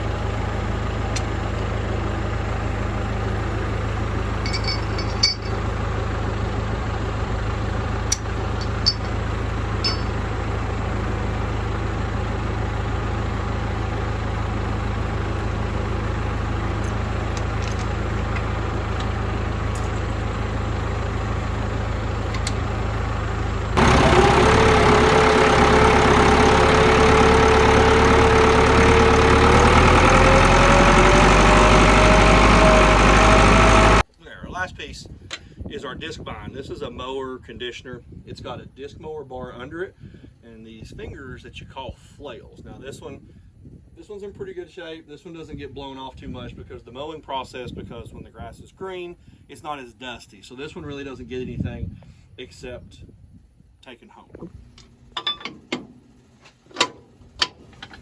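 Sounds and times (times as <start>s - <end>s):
tractor engine running: 0.0s - 34.1s, 54.6s - 58.0s
engine whine rising: 2.2s - 34.1s.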